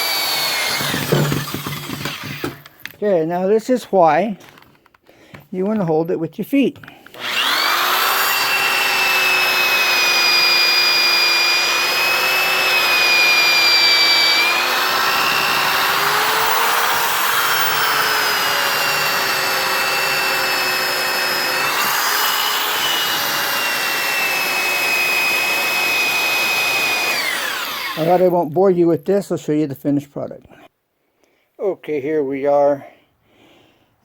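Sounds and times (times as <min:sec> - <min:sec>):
electric drill boring into wood: 0:00.0 - 0:02.7, 0:07.1 - 0:28.4.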